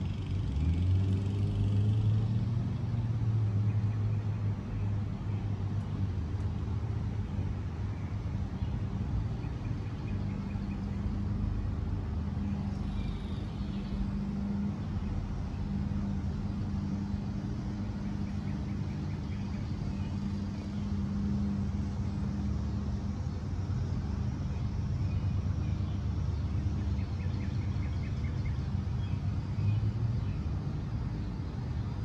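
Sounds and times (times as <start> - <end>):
low mechanical hum: 1.4 - 32.0.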